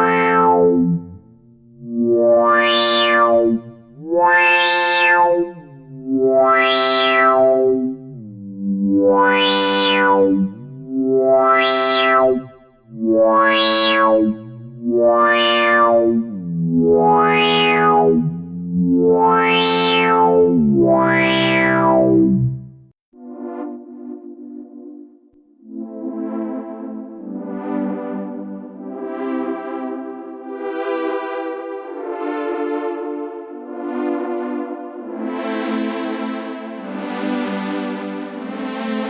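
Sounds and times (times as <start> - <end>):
synthesizer sustained notes: 0.0 - 22.9.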